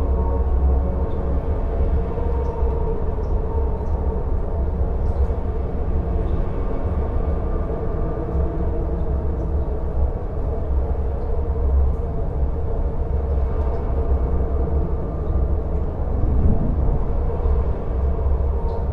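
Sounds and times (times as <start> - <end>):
wind blowing: 16.1 - 17.3.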